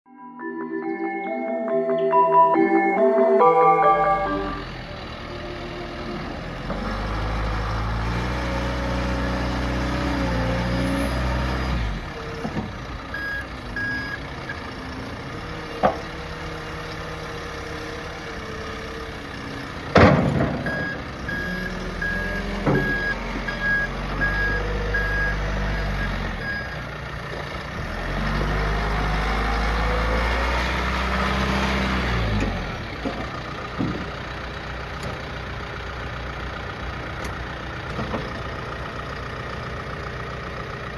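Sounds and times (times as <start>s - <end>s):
reversing alarm beeps: 1.7s - 4.7s, 13.1s - 14.6s, 20.6s - 26.8s
diesel engine revving: 4.0s - 40.9s
loud metallic clank: 20.0s - 21.1s.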